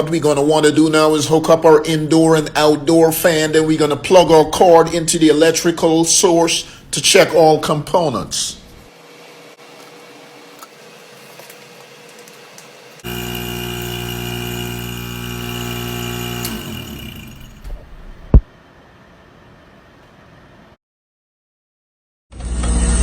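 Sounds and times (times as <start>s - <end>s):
electrical buzzing hum: 12.4s - 18.5s.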